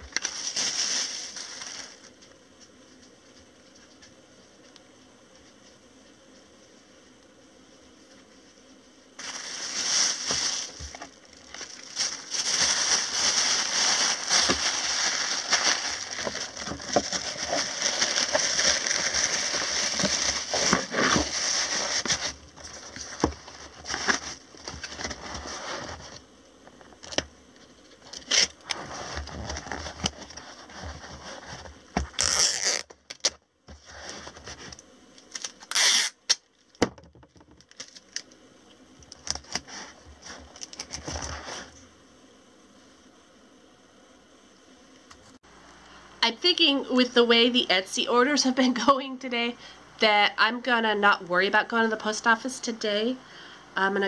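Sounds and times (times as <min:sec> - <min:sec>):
wrapping material crinkling: 0:00.0 - 0:02.2, 0:09.2 - 0:26.2, 0:28.0 - 0:36.7, 0:37.6 - 0:38.3, 0:39.0 - 0:41.7.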